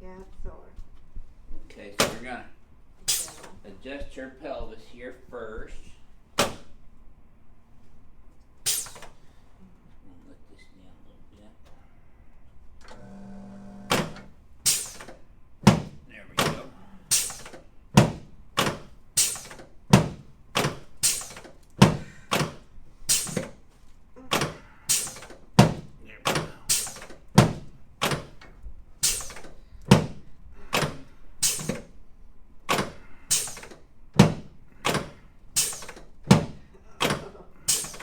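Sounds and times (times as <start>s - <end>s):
adjusting table knocking: 15.1s - 16.7s, 17.5s - 23.6s, 24.4s - 28.6s, 29.4s - 31.9s, 33.6s - 37.4s.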